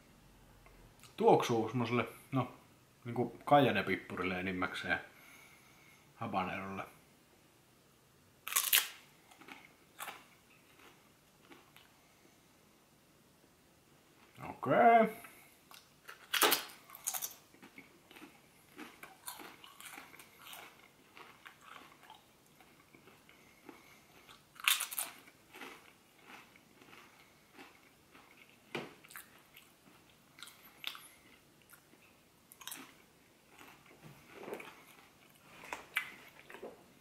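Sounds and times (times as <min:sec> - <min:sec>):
person chewing crunchy chips: 0:08.5 - 0:12.0, 0:15.7 - 0:36.7.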